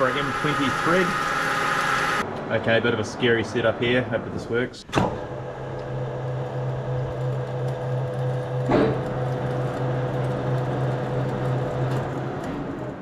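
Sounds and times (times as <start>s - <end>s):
electric drill drilling steel: 0.0s - 2.2s.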